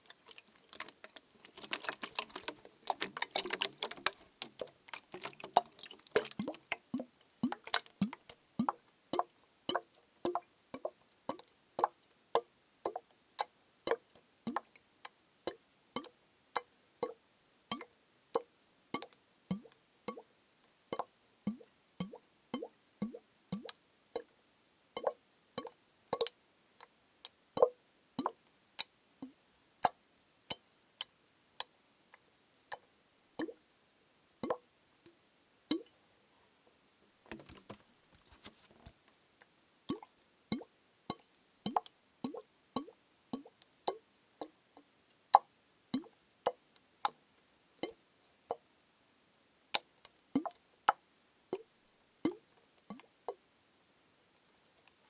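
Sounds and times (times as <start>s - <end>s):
tapping on plastic bottle: 37.3s - 38.9s.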